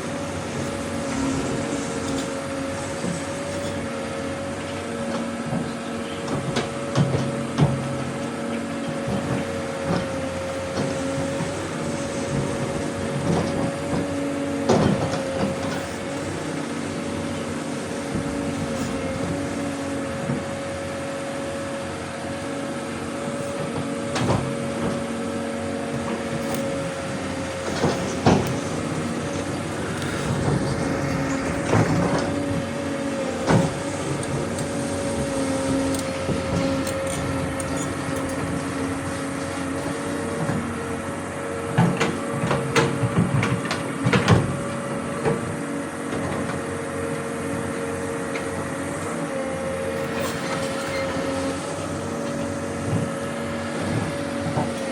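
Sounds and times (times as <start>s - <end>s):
excavator engine whine: 0.0s - 54.9s.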